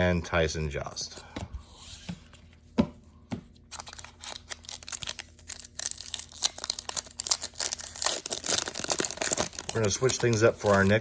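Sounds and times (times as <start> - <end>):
foil wrapper tearing and crinkling: 3.7 - 11.0.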